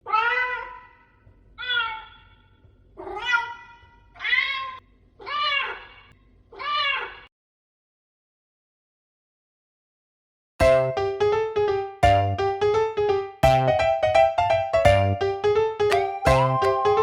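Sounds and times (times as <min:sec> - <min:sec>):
cat meowing: 0:00.1 - 0:00.9, 0:03.0 - 0:07.3.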